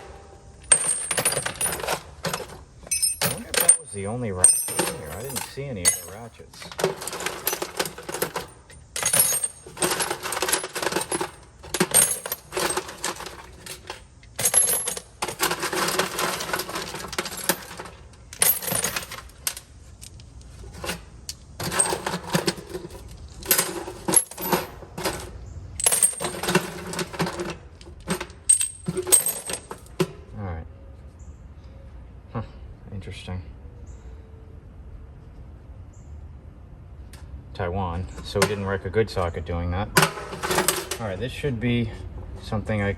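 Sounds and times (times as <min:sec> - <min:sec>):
metal tools clinking and clattering: 0:00.0 - 0:30.2, 0:38.0 - 0:39.3, 0:40.0 - 0:41.2.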